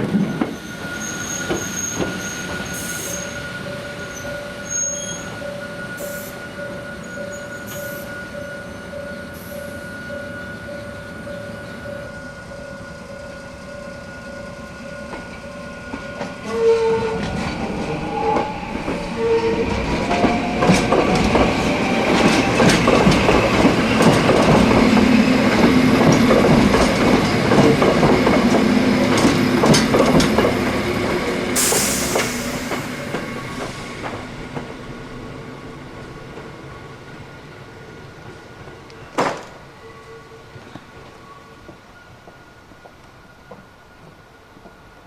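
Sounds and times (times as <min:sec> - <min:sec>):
train horn notes: 0:16.4 - 0:17.4
train wheels clicking over rail joints: 0:19.8 - 0:34.8
burst of hiss: 0:31.6 - 0:33.0.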